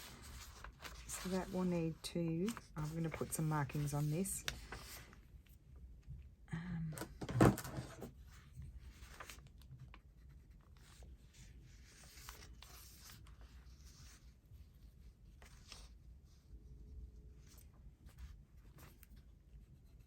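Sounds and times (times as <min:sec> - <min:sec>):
paper rustling: 0:00.0 - 0:05.2, 0:07.6 - 0:14.3.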